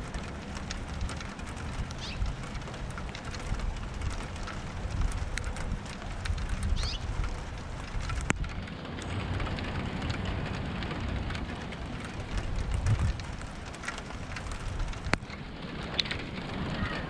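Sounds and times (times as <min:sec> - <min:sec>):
low thunder rumble: 0:00.0 - 0:17.0
rain drops ticking: 0:00.0 - 0:17.0.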